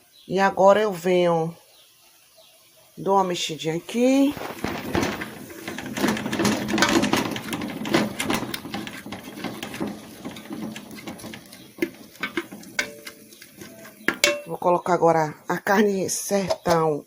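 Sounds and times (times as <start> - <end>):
spoon scraping a pot: 4.4 - 14.6
sharp knocks: 14.1 - 14.6.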